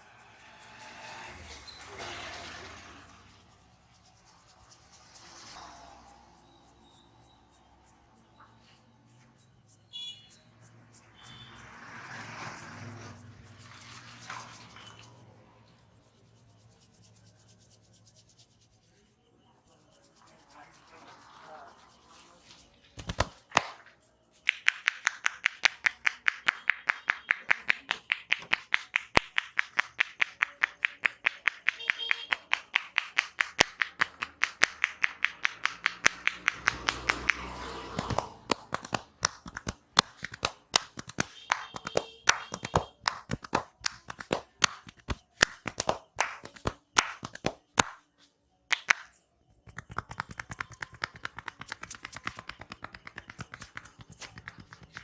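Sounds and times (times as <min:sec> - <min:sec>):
hand slaps on body: 0:23.0 - 0:23.8, 0:24.5 - 0:48.0, 0:48.7 - 0:49.1, 0:49.7 - 0:55.0
percussive massage tapping: 0:23.0 - 0:23.8, 0:24.5 - 0:48.0, 0:48.7 - 0:55.0.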